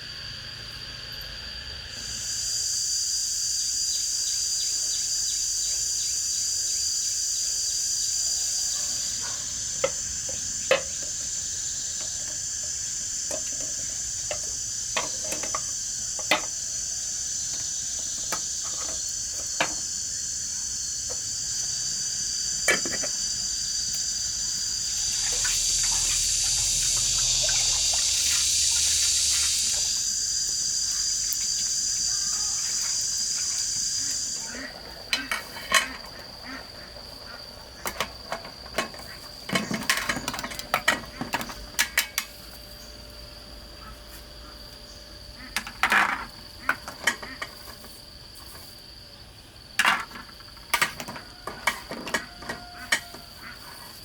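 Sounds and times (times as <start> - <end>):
high-pitched buzz: 24.3 - 30.3
rush of water-like noise: 24.9 - 30.1.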